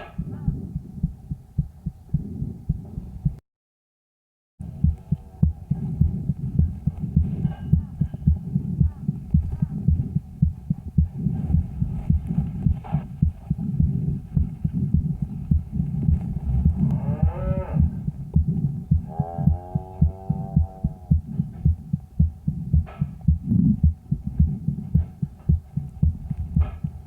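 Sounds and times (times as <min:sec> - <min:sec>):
breath sounds rumble: 0:00.0 - 0:03.4, 0:04.6 - 0:27.0
heartbeat thumps: 0:00.0 - 0:03.4, 0:04.6 - 0:27.0
calf mooing: 0:16.9 - 0:18.0, 0:19.1 - 0:21.1.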